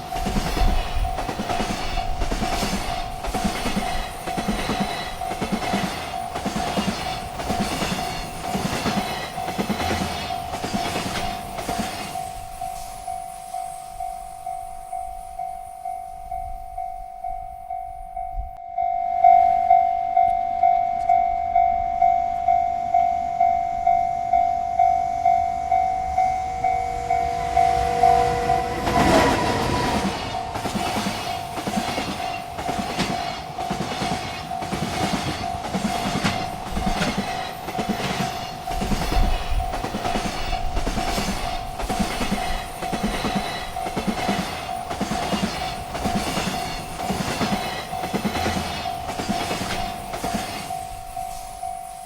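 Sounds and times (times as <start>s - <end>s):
train cars clattering over rails: 0.0s - 13.2s, 25.9s - 51.9s
railroad crossing bell ringing: 0.0s - 52.0s.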